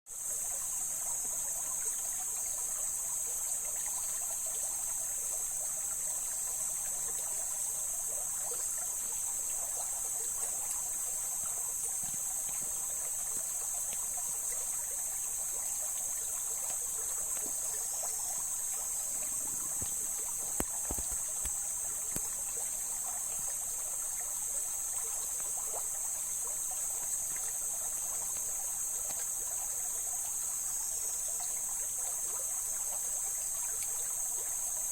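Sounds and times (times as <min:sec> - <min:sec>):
stream water flowing over rocks: 0:00.1 - 0:34.9.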